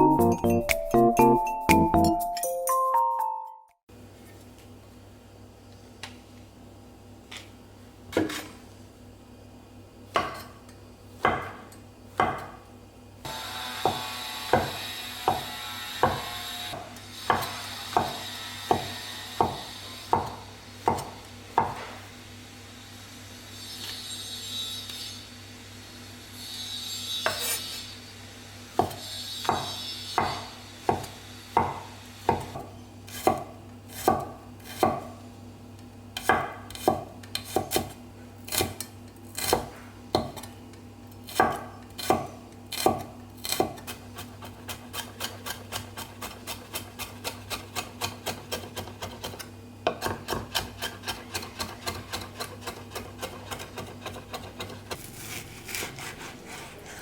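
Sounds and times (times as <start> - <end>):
knife chopping on wooden board: 10.1 - 10.6, 11.2 - 12.6, 13.8 - 22.0, 28.8 - 35.2, 36.2 - 40.5, 41.3 - 57.0
knife scraping board: 27.0 - 28.0, 41.3 - 57.0.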